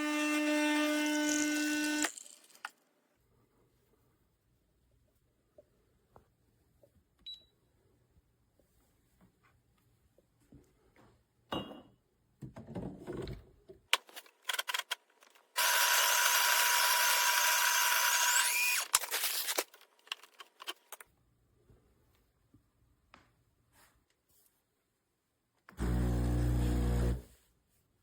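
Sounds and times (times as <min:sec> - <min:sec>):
coffee grinder running: 0:00.0 - 0:02.6, 0:15.6 - 0:18.9, 0:25.8 - 0:27.3.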